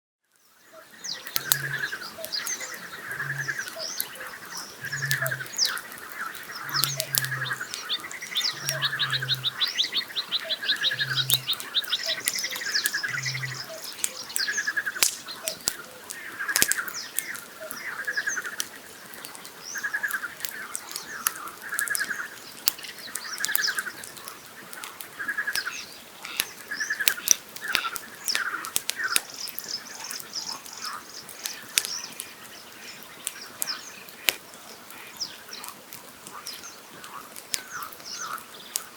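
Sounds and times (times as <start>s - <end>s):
campfire crackling and popping: 0.3s - 38.9s
nightingale singing trills: 0.4s - 18.6s, 25.2s - 34.2s
frogs croaking: 0.5s - 38.9s.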